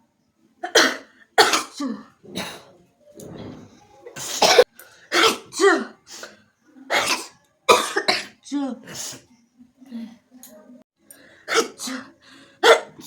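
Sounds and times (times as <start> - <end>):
woman coughing: 0.6 - 2.7, 4.2 - 6.1, 6.9 - 9.3, 11.5 - 13.0.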